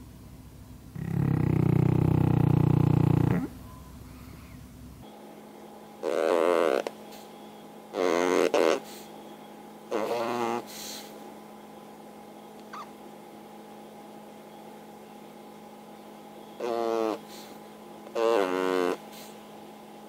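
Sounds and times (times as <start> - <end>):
steady hum: 0.0 - 20.0
sped-up dog snoring buzzes: 0.9 - 3.6, 6.0 - 9.2, 9.8 - 11.3, 16.2 - 19.7.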